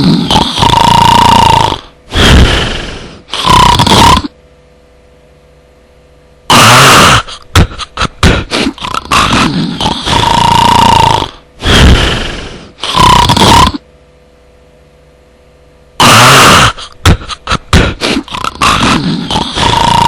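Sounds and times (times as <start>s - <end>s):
loud distorted snoring: 0.0s - 4.3s, 6.5s - 7.3s, 8.7s - 13.8s, 16.0s - 16.8s, 17.8s - 20.0s.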